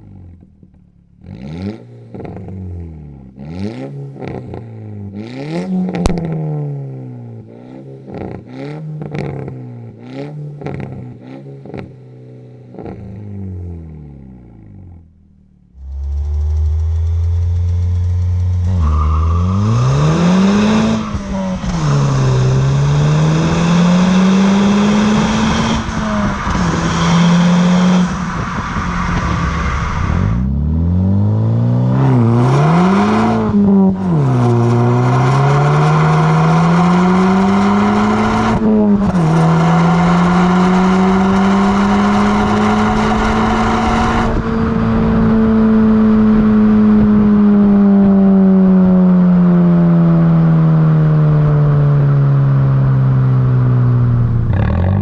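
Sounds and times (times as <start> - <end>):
car engine accelerating hard: 15.7 - 55.0.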